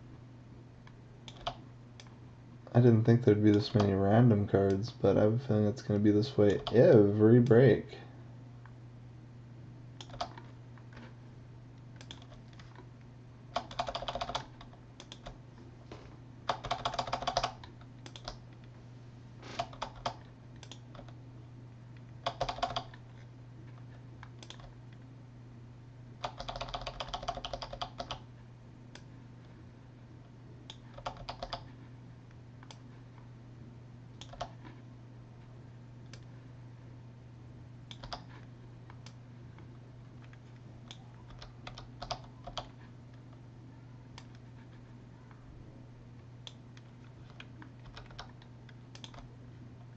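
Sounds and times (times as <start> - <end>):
steady low hum: 0.0 - 49.9
computer keyboard typing: 1.3 - 1.6, 10.0 - 10.5, 12.0 - 12.7, 13.5 - 15.4, 16.5 - 18.4, 19.6 - 21.2, 22.2 - 23.0, 24.3 - 24.8, 26.2 - 28.2, 30.7 - 31.7, 34.2 - 34.6, 37.9 - 38.3, 40.8 - 42.7, 47.2 - 49.3.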